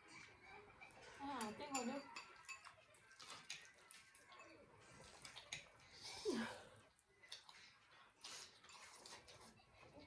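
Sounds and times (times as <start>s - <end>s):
mouth and eating noises: 6.9s - 10.0s.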